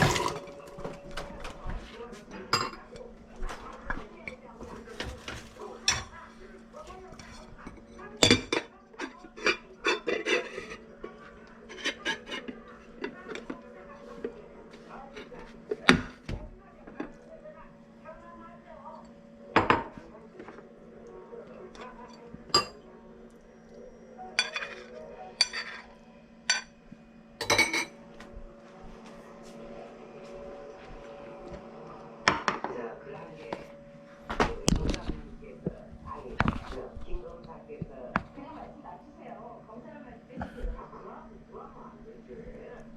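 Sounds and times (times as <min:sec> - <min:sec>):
cutlery clinking against dish: 0:02.5 - 0:06.2, 0:07.1 - 0:13.6, 0:21.7 - 0:22.8, 0:24.4 - 0:26.8, 0:27.4 - 0:28.0
utensil scraping a dish: 0:09.0 - 0:16.0.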